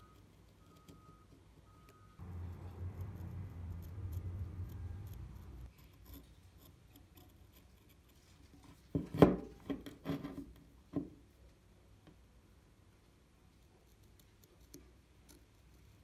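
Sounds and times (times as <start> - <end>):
low hum: 2.2 - 5.7.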